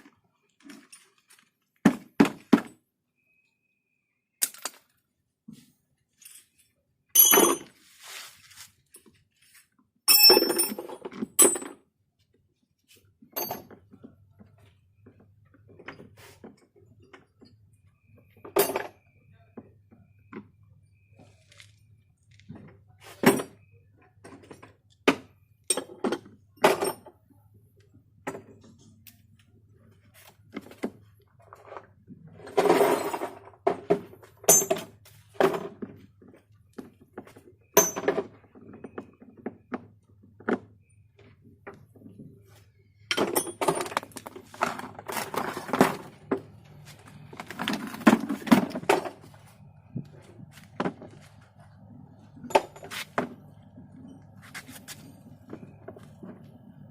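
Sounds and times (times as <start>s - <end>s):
plastic and metal parts clattering: 0.4s - 2.8s, 10.1s - 11.8s, 30.5s - 40.7s, 43.1s - 51.4s
steady low hum: 43.7s - 56.9s.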